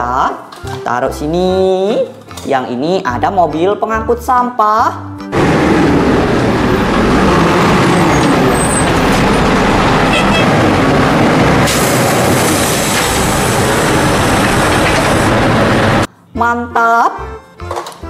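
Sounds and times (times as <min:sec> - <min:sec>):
garbage truck engine and machinery: 0:05.3 - 0:16.1
hiss: 0:11.7 - 0:15.3.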